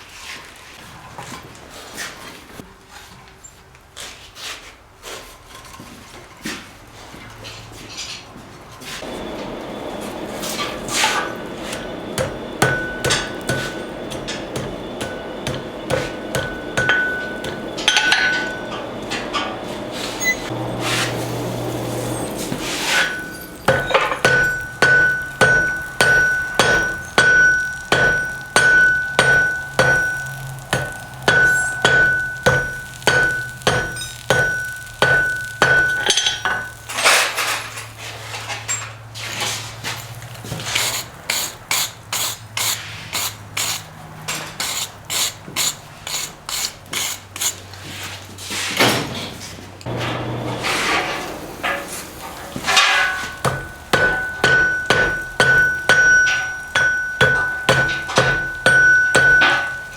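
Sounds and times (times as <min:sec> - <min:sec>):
hammer striking iron on anvil: 0:10.4 - 0:19.6, 0:22.8 - 0:37.0, 0:52.6 - 0:59.9.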